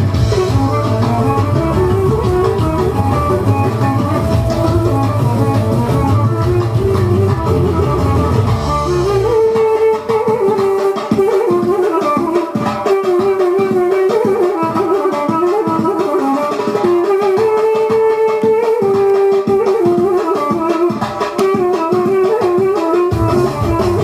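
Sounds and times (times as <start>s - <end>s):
deep bass: 0.0s - 9.5s
steady drum beat: 0.0s - 17.6s, 21.0s - 24.0s
plucked-string melody: 0.0s - 24.0s.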